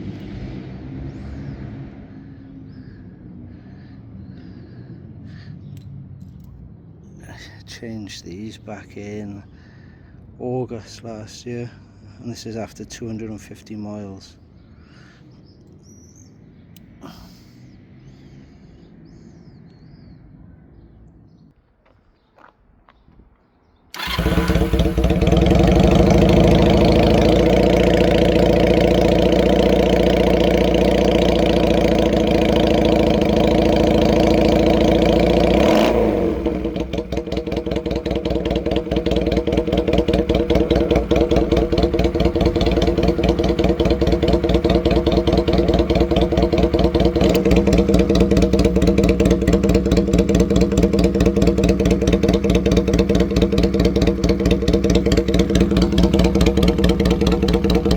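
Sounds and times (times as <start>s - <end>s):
motorcycle engine idling: 23.9s - 57.9s.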